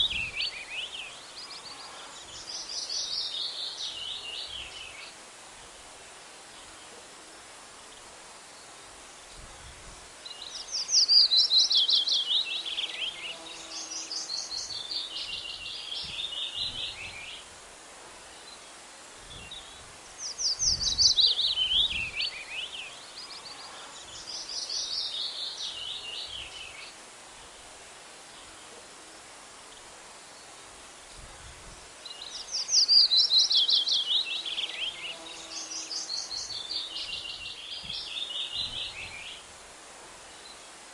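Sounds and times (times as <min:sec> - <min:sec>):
steady outdoor hiss: 0:00.0 - 0:40.9
songbird singing falling trills: 0:19.3 - 0:26.9, 0:32.0 - 0:39.4.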